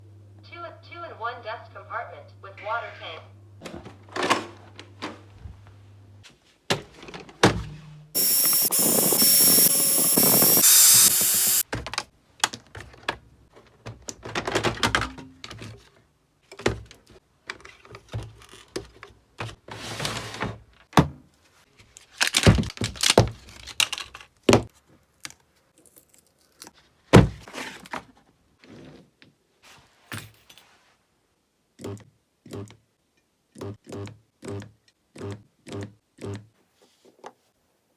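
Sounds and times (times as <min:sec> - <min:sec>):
loud even noise: 0:08.2 - 0:11.6.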